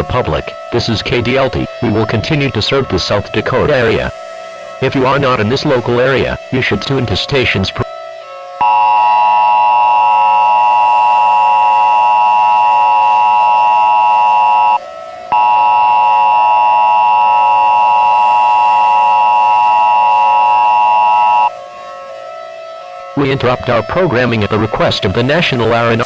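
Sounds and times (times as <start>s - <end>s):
loud dual tone alert signal: 8.6s - 21.5s.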